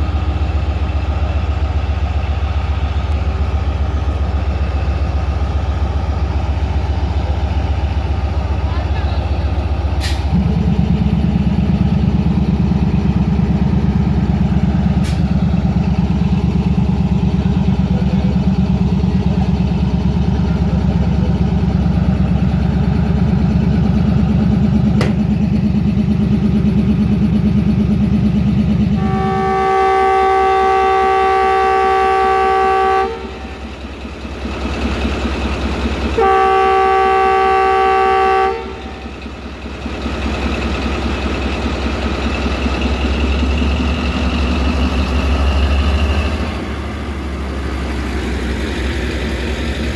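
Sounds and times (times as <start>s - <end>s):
locomotive engine throbbing: 0.0s - 49.9s
multi-tone train horn: 28.9s - 33.6s, 36.2s - 39.2s.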